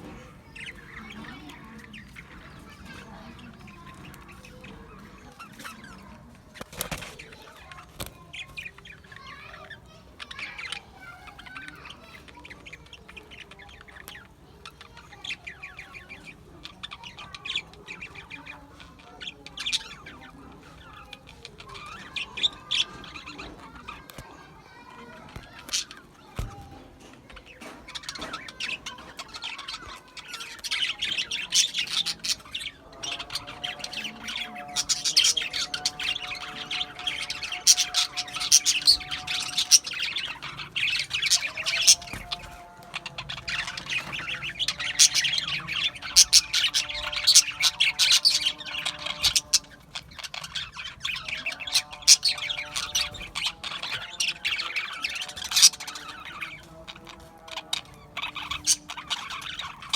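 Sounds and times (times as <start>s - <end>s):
budgies chirping and squawking: 0.0s - 59.9s.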